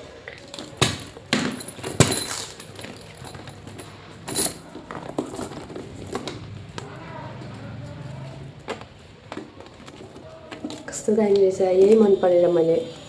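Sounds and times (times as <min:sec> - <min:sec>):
metal hardware clicks and clinks: 0:00.5 - 0:06.3
handbag rustle: 0:00.6 - 0:06.2.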